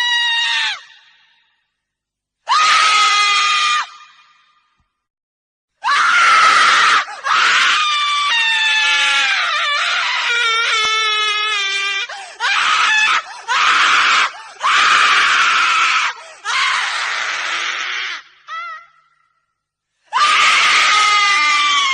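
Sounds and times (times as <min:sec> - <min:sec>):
woman screaming: 0:02.5 - 0:04.2, 0:05.8 - 0:19.1, 0:20.2 - 0:21.9.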